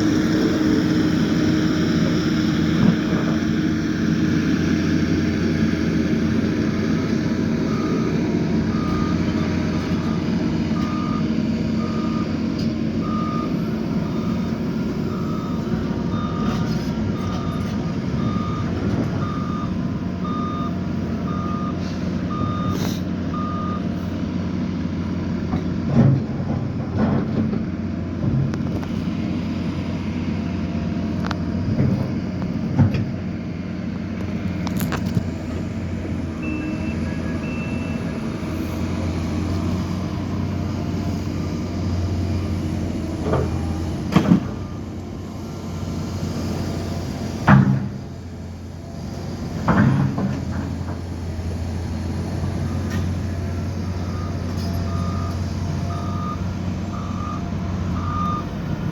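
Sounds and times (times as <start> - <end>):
diesel engine running: 0.0 - 58.9
reversing alarm beeping: 6.9 - 24.0, 36.2 - 42.9, 44.4 - 44.9, 53.8 - 58.7
knocks and clunks: 25.5 - 28.9, 31.7 - 33.2.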